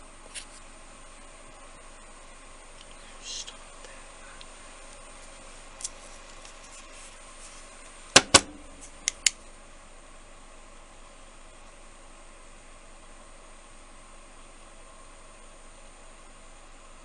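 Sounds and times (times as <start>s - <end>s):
steady background hiss: 0.0s - 17.0s
sharp clicks of hard objects: 8.2s - 9.4s.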